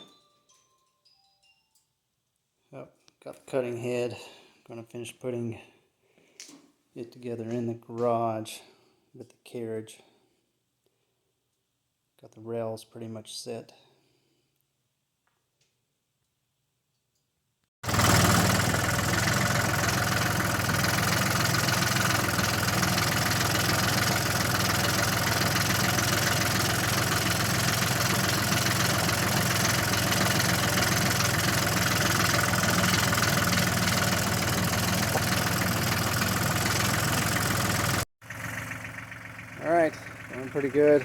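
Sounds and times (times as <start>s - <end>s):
tractor engine running: 17.8s - 41.0s.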